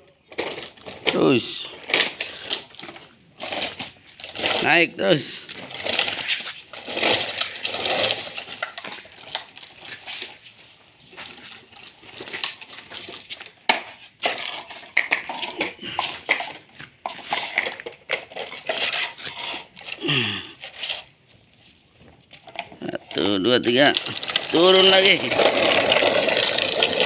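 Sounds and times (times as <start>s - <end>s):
excavator bucket scraping: 13.0s - 20.0s, 24.1s - 27.0s.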